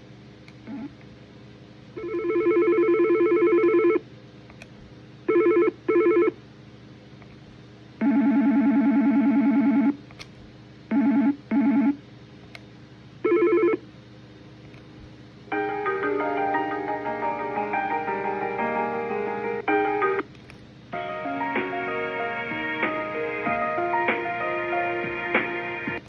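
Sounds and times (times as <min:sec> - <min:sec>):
electronic phone ringing: 0:02.0 - 0:04.0, 0:05.3 - 0:06.4, 0:08.0 - 0:10.0, 0:10.9 - 0:12.0, 0:13.2 - 0:13.8.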